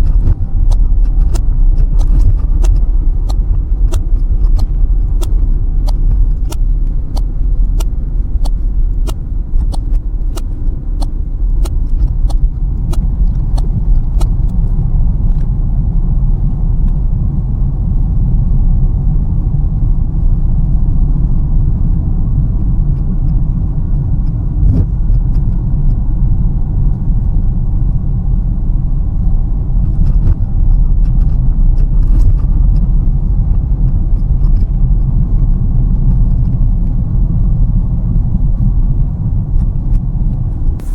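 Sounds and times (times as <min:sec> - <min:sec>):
car engine and road rumble: 0:00.0 - 0:40.9
regular ticking: 0:00.6 - 0:15.5.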